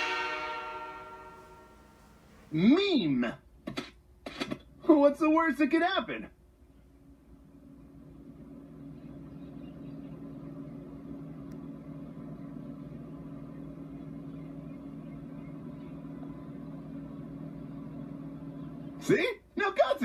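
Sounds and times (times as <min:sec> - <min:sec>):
arena goal horn blast: 0:00.0 - 0:02.2.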